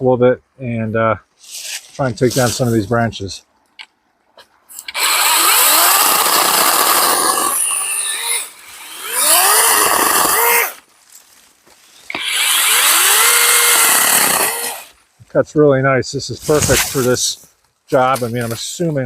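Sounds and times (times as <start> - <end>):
mini chainsaw cutting branches: 4.7 - 10.9, 12.0 - 15.0.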